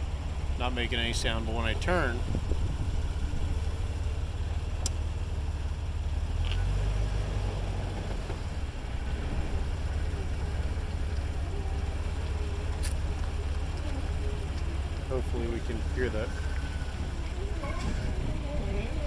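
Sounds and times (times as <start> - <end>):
engine and road rumble: 0.0 - 19.0
light clicks from rear end: 4.6 - 5.1, 6.3 - 6.8, 10.0 - 18.6
faint wavering tone: 10.0 - 19.0.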